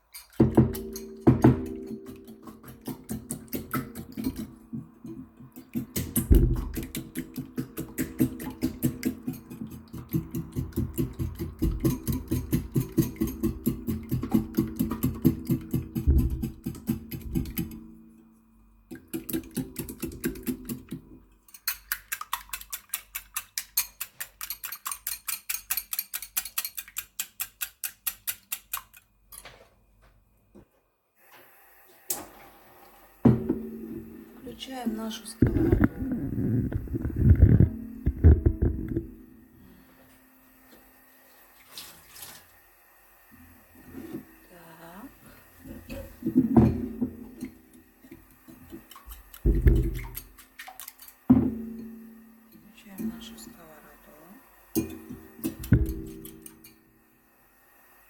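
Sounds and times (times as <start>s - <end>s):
fork beating eggs in bowl: 0.1s - 17.8s, 18.9s - 29.1s, 47.4s - 51.3s.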